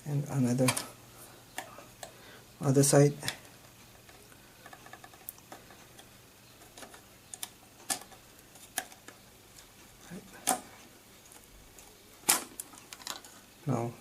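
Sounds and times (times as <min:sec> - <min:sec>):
plastic and metal parts clicking: 0:11.3 - 0:13.4.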